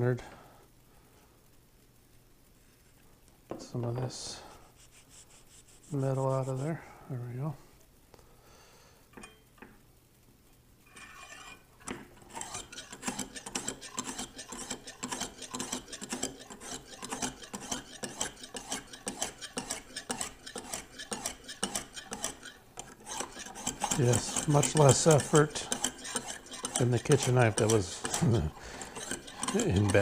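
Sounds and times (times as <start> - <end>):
honing stone scraping knife edge: 10.9 - 30.0.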